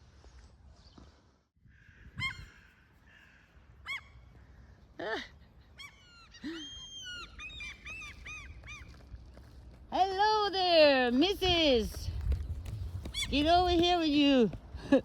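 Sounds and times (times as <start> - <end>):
crows calling: 1.6 - 4.8.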